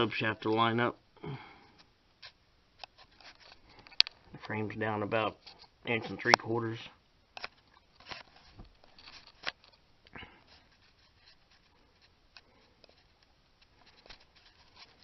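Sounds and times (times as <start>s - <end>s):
faint clicks and knocks: 1.7s - 4.4s.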